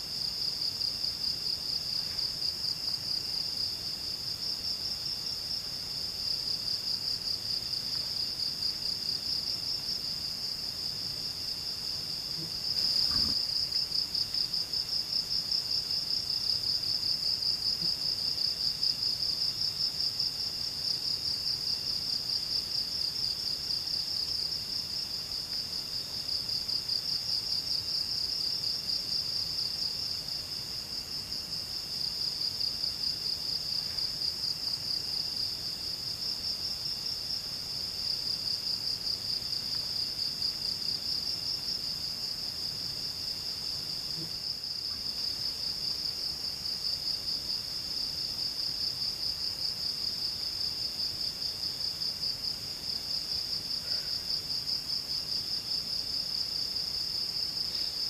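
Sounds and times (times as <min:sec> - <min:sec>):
lower insect trill: 0:00.0 - 0:58.0.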